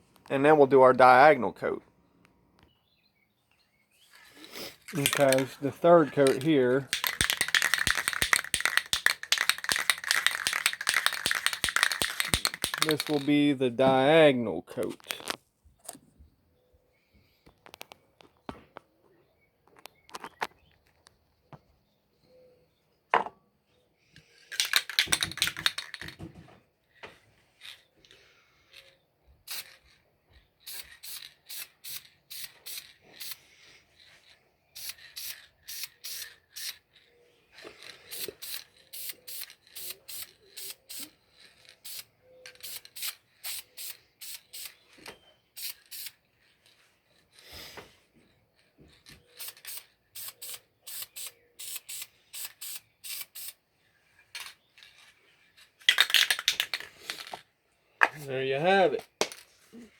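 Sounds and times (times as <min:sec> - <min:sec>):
aerosol paint spraying: 0:04.9 - 0:13.3, 0:30.6 - 0:33.4, 0:34.8 - 0:36.8, 0:38.0 - 0:41.2, 0:41.8 - 0:44.8, 0:45.6 - 0:46.2, 0:49.3 - 0:53.6.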